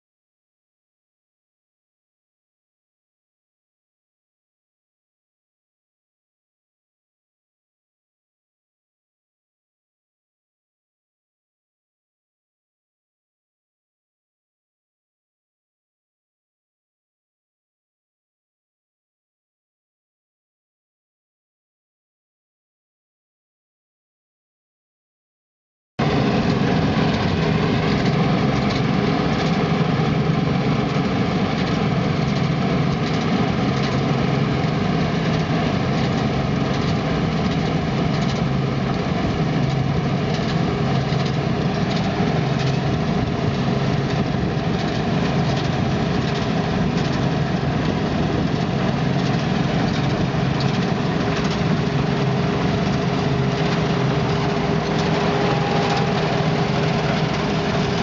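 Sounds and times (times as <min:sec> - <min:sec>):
diesel engine running steadily: 0:26.0 - 0:58.0.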